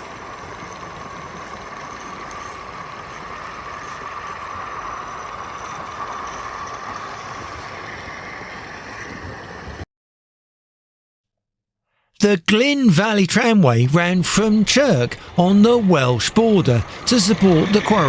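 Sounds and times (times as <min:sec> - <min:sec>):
steam locomotive hissing: 0:00.0 - 0:09.8, 0:13.8 - 0:18.0.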